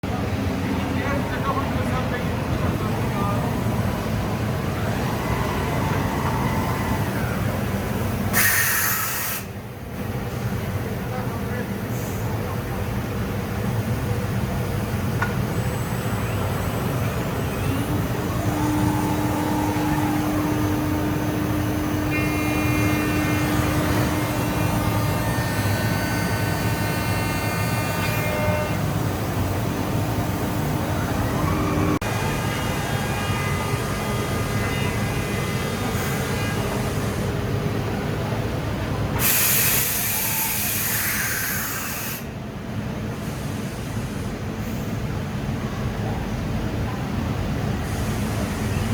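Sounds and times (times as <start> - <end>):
air hissing: 8.0 - 9.6, 39.2 - 42.3
machine hum: 16.4 - 37.3
whining drive tones: 17.6 - 36.8.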